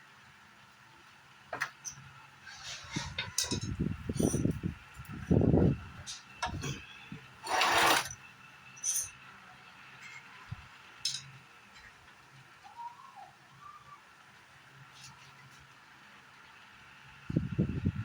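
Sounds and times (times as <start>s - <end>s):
knocks and clinks: 8.8s - 9.2s, 11.0s - 11.3s.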